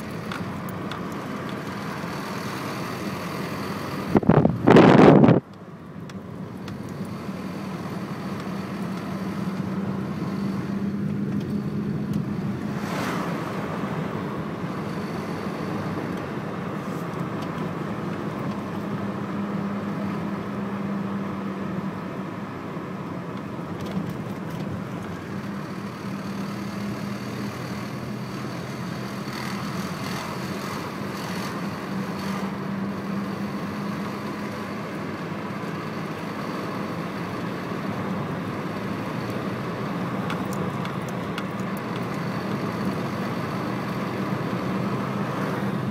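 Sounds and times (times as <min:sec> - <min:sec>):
car engine rattling drone: 0:00.0 - 0:45.9.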